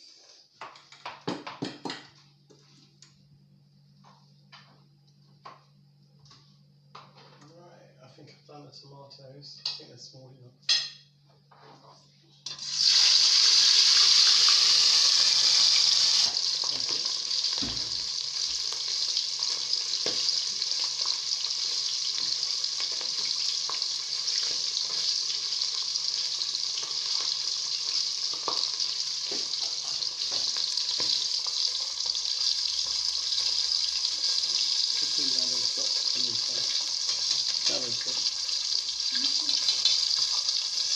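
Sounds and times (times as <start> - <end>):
fish frying in hot oil: 12.5 - 40.9.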